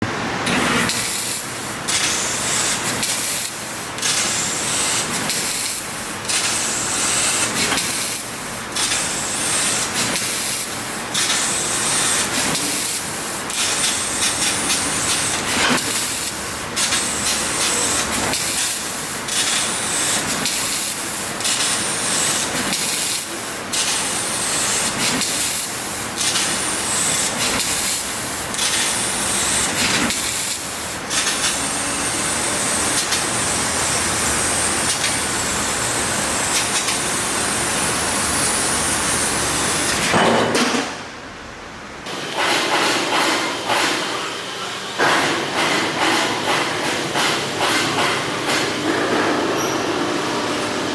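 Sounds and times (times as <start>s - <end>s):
laser cutter jet hissing: 0.6s - 40.1s.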